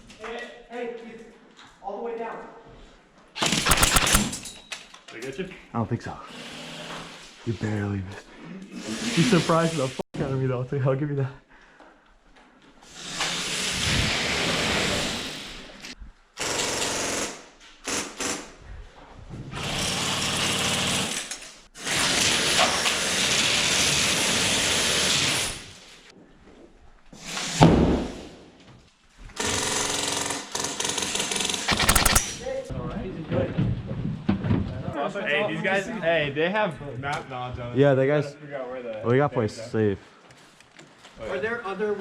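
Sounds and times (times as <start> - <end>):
airsoft guns firing bursts: 3.7 - 4.3, 31.7 - 32.3.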